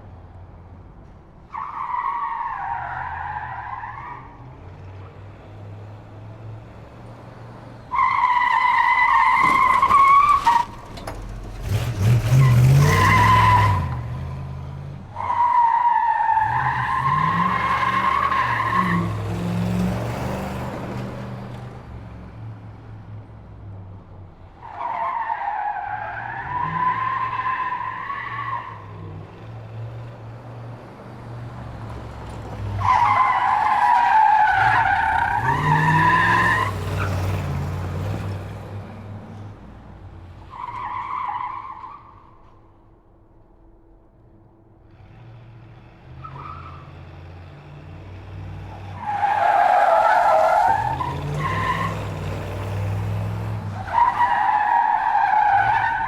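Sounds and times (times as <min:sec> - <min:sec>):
harsh tyre skid: 0:01.4 - 0:05.1, 0:07.6 - 0:21.8, 0:24.5 - 0:42.6, 0:44.9 - 0:56.0.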